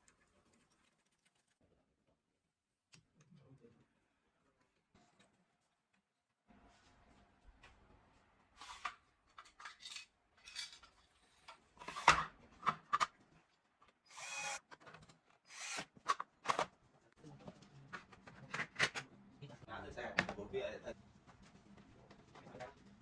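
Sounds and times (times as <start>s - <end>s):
rasping pull: 14.1s - 14.6s, 15.5s - 16.6s.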